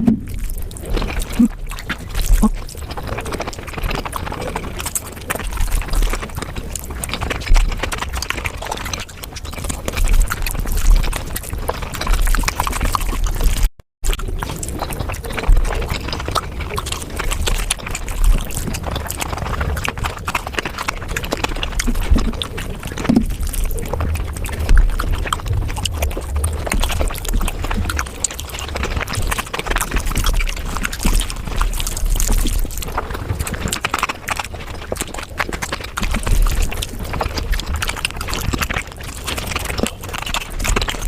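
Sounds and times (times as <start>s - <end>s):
wet chewing and lip smacking: 0.0s - 41.0s.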